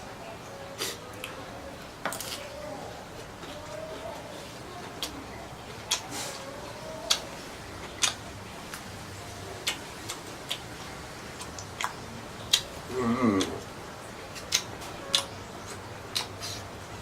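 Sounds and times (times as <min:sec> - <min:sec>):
chewing smacks: 0:04.8 - 0:06.4, 0:07.0 - 0:08.9, 0:09.6 - 0:10.8, 0:11.4 - 0:12.8, 0:14.3 - 0:16.7.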